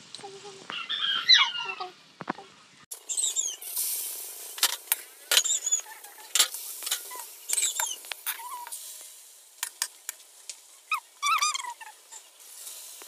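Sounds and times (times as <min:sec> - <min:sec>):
small animal squeaky whimpers: 0:03.1 - 0:03.6, 0:05.4 - 0:06.0, 0:07.1 - 0:08.7, 0:10.9 - 0:12.0.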